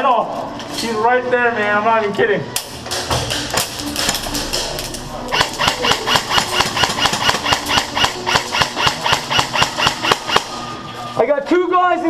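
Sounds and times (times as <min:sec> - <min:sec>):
airsoft gun rapid shots: 0:05.3 - 0:10.6.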